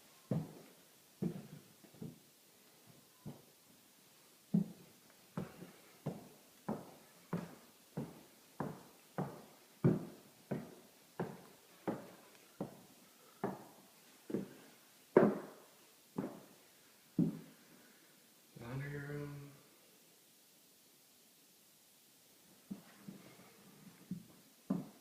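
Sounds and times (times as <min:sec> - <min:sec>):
footsteps climbing stairs: 0:00.3 - 0:00.6, 0:04.5 - 0:04.8, 0:05.4 - 0:12.8, 0:15.2 - 0:15.6, 0:16.2 - 0:16.5, 0:17.2 - 0:17.5.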